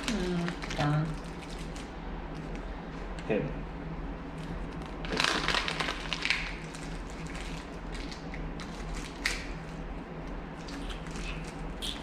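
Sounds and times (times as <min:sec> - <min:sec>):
plastic packaging crinkling: 0:00.0 - 0:01.9, 0:04.8 - 0:09.7
plastic packaging tearing: 0:05.0 - 0:09.6.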